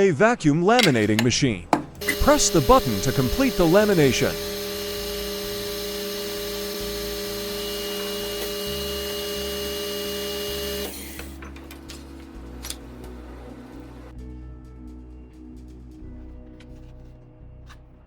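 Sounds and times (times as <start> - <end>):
laminating machine hum and hiss: 2.0 - 14.1.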